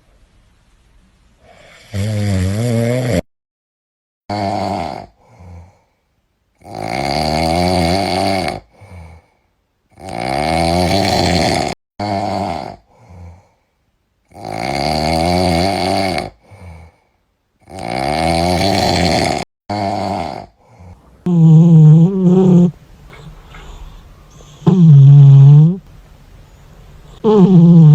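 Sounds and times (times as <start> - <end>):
cat snoring: 4.3 - 5.8, 6.6 - 9.2, 10.0 - 13.5, 14.3 - 17.0, 17.6 - 25.9, 27.1 - 27.9
cat breathing softly: 23.0 - 24.7.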